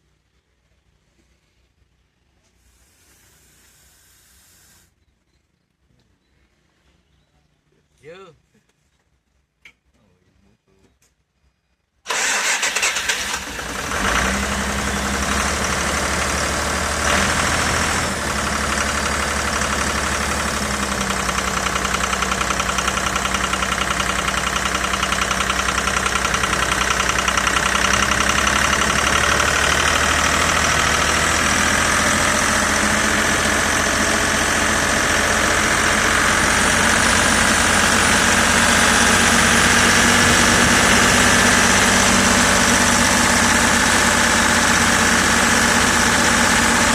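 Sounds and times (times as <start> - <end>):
diesel engine running: 12.1 - 46.9.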